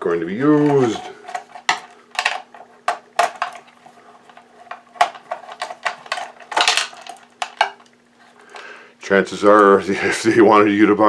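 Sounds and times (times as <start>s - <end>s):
clicks and clinks of parts and tools: 0.6s - 8.7s.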